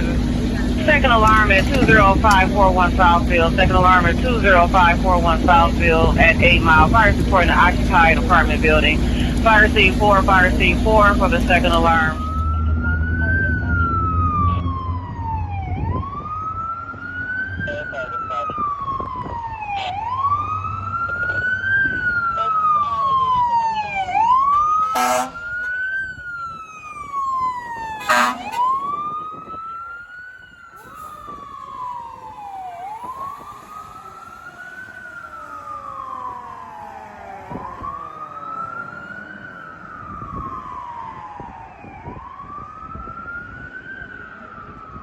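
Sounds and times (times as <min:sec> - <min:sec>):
fire engine siren wailing: 0:00.0 - 0:45.0
short horn blasts: 0:24.9 - 0:25.6, 0:27.9 - 0:28.8.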